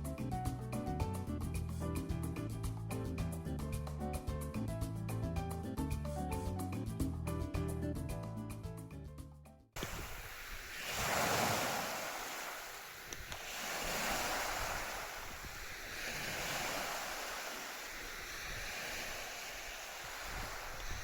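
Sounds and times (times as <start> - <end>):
lake waves washing onto shore: 9.8 - 21.0
wind: 9.8 - 21.0.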